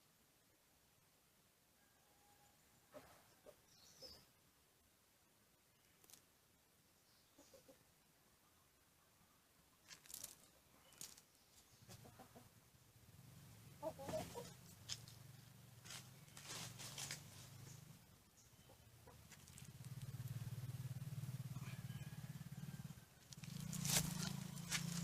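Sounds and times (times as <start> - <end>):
chicken clucking: 7.3 - 7.8, 11.8 - 12.6, 13.8 - 14.8, 18.5 - 19.7.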